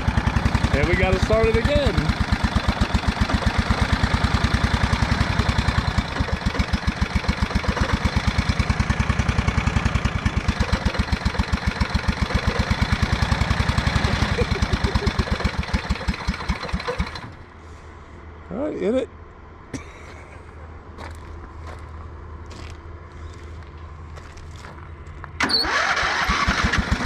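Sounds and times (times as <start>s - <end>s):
small tractor engine firing: 0.0s - 17.5s, 25.4s - 27.0s.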